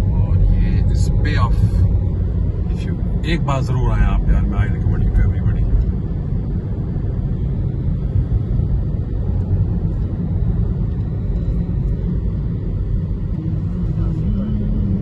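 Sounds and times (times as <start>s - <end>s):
car engine and tyre rumble: 0.0s - 15.0s.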